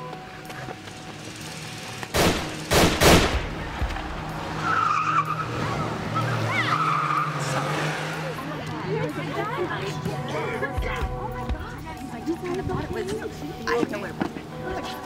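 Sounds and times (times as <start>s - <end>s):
gunshots: 2.2s - 3.6s
tyres squealing: 4.5s - 8.1s.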